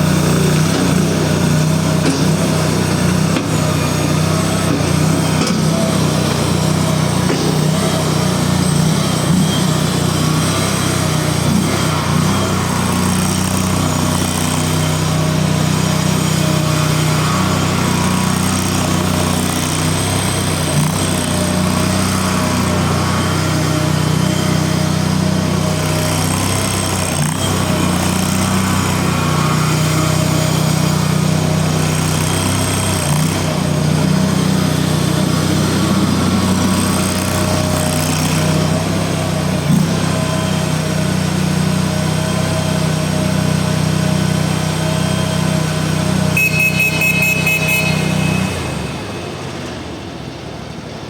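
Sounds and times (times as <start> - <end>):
loader engine running: 0.0 - 51.0
high-pitched pulsing tone: 46.4 - 49.2.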